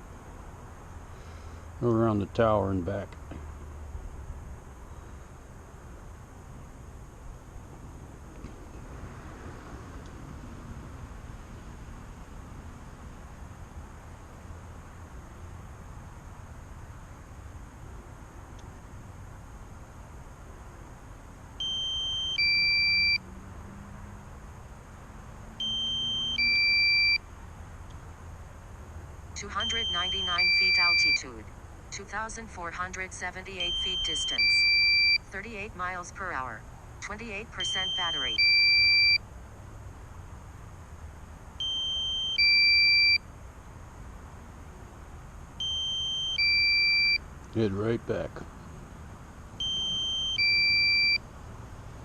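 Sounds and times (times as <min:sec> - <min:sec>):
steady background hiss: 0:00.0 - 0:34.6
two-tone electronic warning beep: 0:21.6 - 0:23.2, 0:25.6 - 0:27.2, 0:29.4 - 0:31.4, 0:32.0 - 0:39.2, 0:41.6 - 0:43.2, 0:45.6 - 0:47.2, 0:49.6 - 0:51.2.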